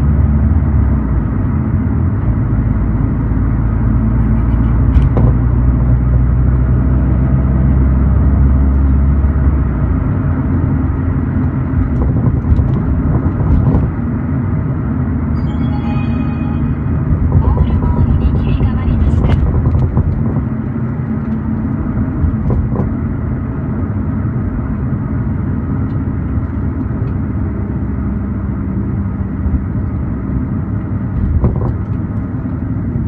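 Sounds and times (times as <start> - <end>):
car road rumble: 0.0 - 33.0
knocks and rattles from trunk: 4.9 - 5.6, 11.6 - 14.1, 19.0 - 23.1, 31.0 - 32.4.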